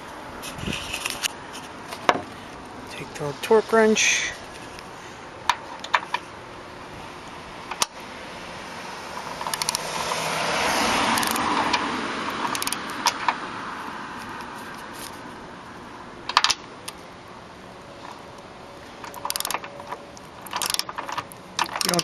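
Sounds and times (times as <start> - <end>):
vehicle passing: 0.0 - 22.0
metallic clicks: 9.2 - 9.8, 11.1 - 11.8, 12.4 - 13.4, 16.3 - 17.0, 19.0 - 22.0
rapid ratchet clicking: 9.2 - 9.8, 11.1 - 11.8, 12.4 - 13.2, 19.0 - 19.7, 20.4 - 22.0.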